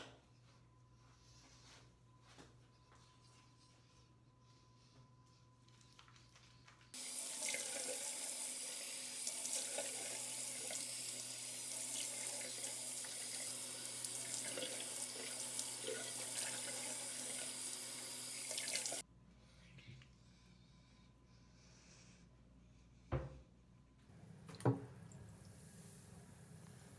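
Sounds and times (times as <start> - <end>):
tap water running into sink: 7.0 - 19.0.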